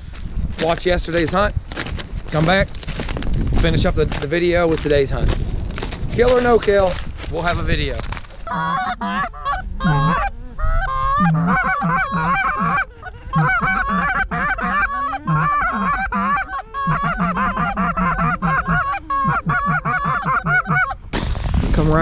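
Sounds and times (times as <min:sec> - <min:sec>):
geese honking: 0:08.4 - 0:21.1.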